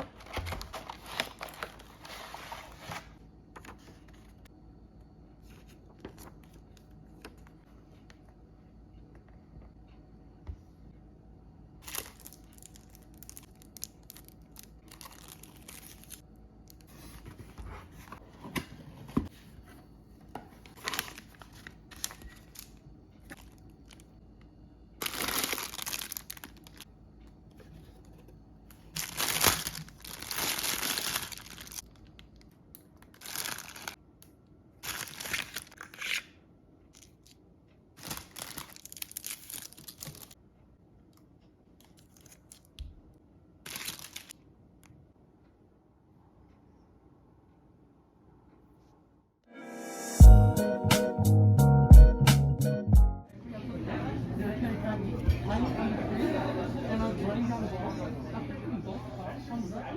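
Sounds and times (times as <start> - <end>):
packaging crinkling and tearing: 0.0 - 2.9, 11.8 - 16.2, 20.7 - 24.1, 25.0 - 26.8, 28.9 - 32.4, 33.0 - 34.0, 34.8 - 36.3, 38.0 - 40.4, 43.7 - 44.3.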